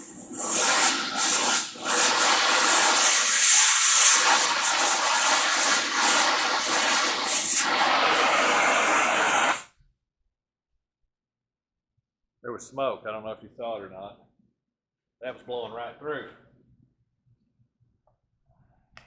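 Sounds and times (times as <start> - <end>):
gas cutting torch hissing: 0.0 - 9.7.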